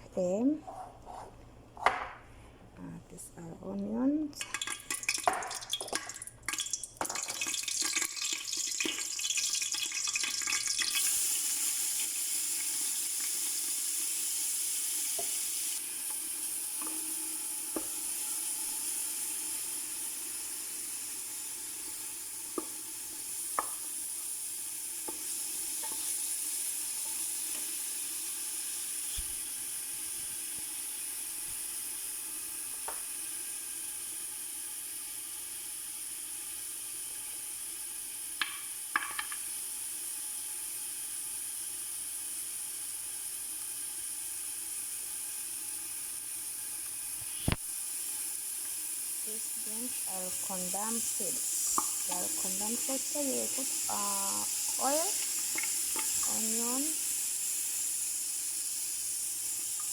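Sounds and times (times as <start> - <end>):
onions sizzling in hot oil: 4.4 - 59.9.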